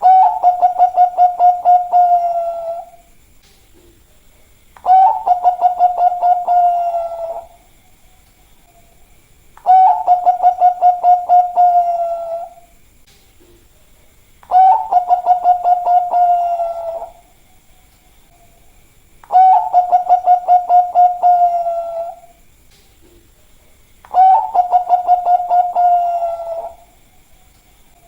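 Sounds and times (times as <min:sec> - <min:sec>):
dove cooing: 0:00.0 - 0:03.1, 0:04.8 - 0:07.6, 0:09.6 - 0:12.7, 0:14.4 - 0:17.3, 0:19.2 - 0:22.4, 0:24.1 - 0:27.0.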